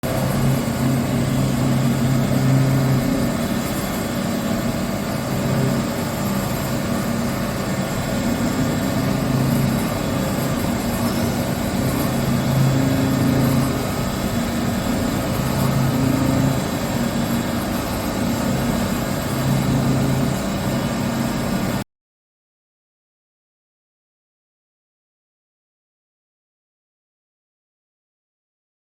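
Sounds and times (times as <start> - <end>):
low hum: 0.0 - 21.8
milling machine whirring: 0.0 - 21.8.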